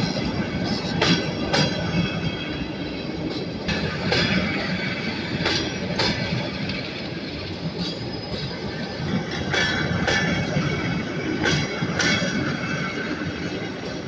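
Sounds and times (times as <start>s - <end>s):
moving train rumble: 0.0s - 14.0s
train wheels clacking: 0.0s - 14.0s.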